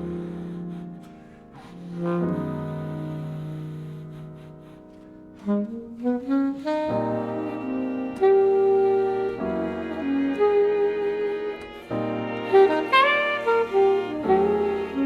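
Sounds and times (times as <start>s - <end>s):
alto saxophone: 0.0s - 15.0s
piano: 0.0s - 15.0s
string section: 6.9s - 15.0s.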